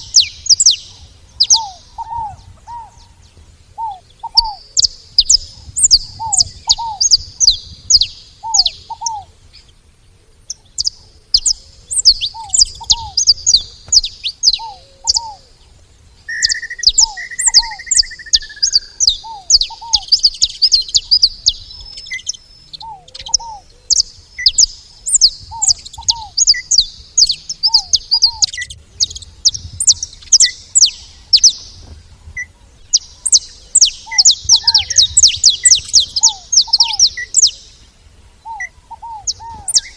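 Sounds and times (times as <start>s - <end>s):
finches chirping: 0.0s - 9.7s, 10.5s - 39.9s
bird paired low call: 0.0s - 39.9s.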